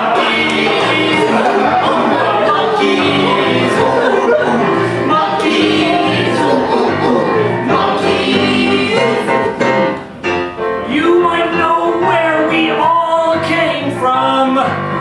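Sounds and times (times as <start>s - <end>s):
live band with voices singing: 0.0s - 10.1s
steady bass line: 0.0s - 10.4s.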